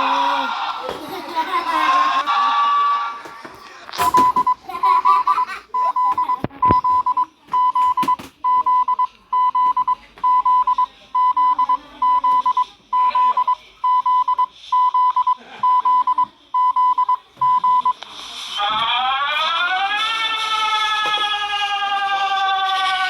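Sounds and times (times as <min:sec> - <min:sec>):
high-pitched warning beep: 0:04.0 - 0:18.0.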